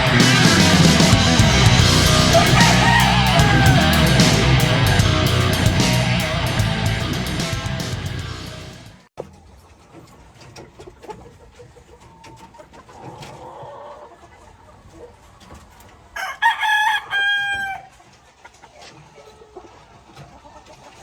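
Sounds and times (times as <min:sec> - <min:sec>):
distant rooster crowing: 0:01.8 - 0:05.0, 0:16.2 - 0:17.9
rooster crowing loudly: 0:01.9 - 0:05.0, 0:16.2 - 0:17.9.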